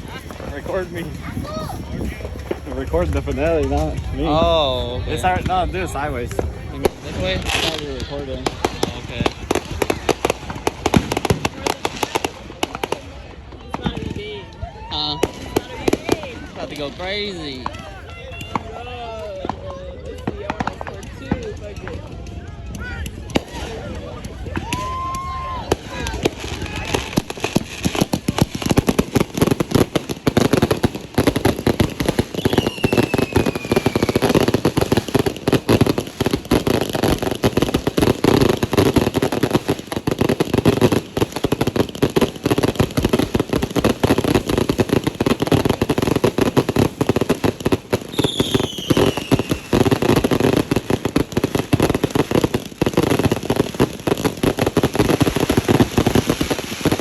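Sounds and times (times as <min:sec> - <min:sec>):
fireworks bangs and crackling: 0:00.0 - 0:57.0
falling whistles: 0:32.3 - 0:34.3, 0:48.1 - 0:49.5.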